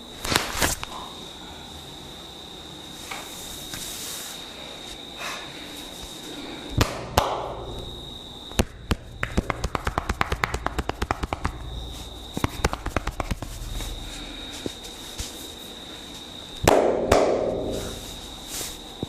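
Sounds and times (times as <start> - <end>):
hands slapping head and body: 6.8 - 7.6, 8.5 - 11.6, 12.4 - 13.6, 16.6 - 17.8.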